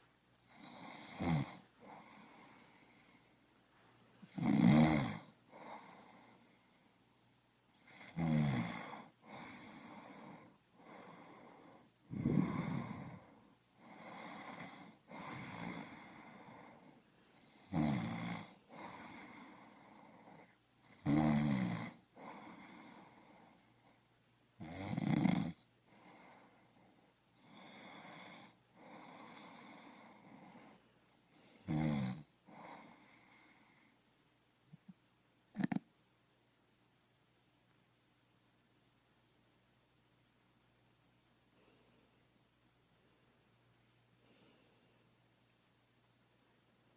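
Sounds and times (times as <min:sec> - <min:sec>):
person snoring: 0:00.4 - 0:03.4, 0:04.2 - 0:06.7, 0:07.8 - 0:23.6, 0:24.6 - 0:26.6, 0:27.4 - 0:30.8, 0:31.4 - 0:33.9, 0:35.5 - 0:35.8
soft breath out: 0:01.6 - 0:04.3, 0:08.8 - 0:17.5, 0:41.5 - 0:42.3, 0:44.2 - 0:45.2.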